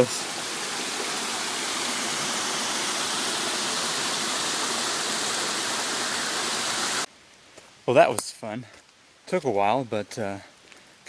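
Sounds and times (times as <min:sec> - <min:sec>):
waterfall pouring into pool: 0:00.0 - 0:07.1.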